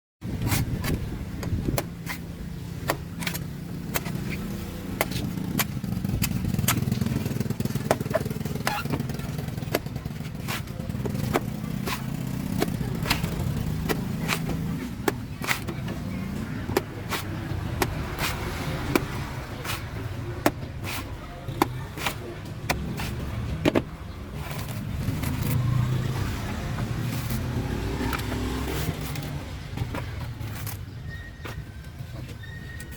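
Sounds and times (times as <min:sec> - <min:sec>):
knife chopping coconut: 0:01.7 - 0:25.6.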